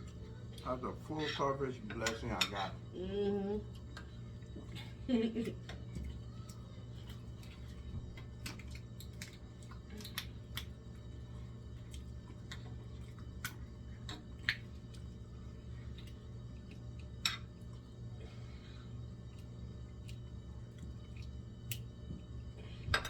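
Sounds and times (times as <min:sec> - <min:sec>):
steady low hum: 0:00.0 - 0:23.0
people chewing: 0:03.6 - 0:13.6.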